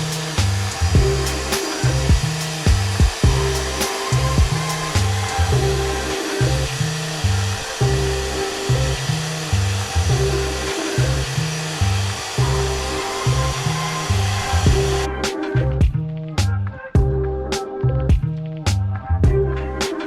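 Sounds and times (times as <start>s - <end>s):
paint sprayer hissing: 0.0s - 15.1s
background music with bassline: 0.0s - 20.0s.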